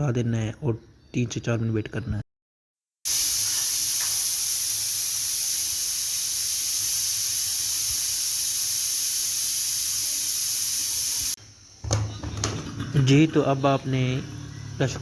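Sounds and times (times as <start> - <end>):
steam hissing from pressure cooker: 3.1 - 11.4.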